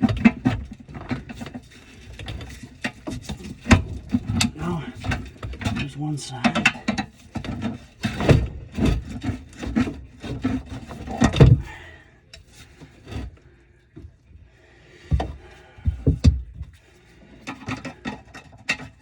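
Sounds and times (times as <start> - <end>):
metal tools knocking and scraping: 0.0 - 11.8.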